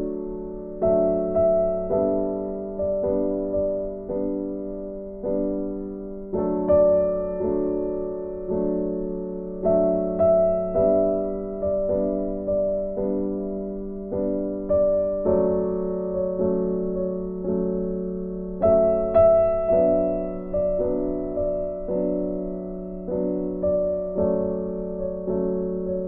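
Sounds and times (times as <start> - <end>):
gentle piano melody: 0.0 - 26.0.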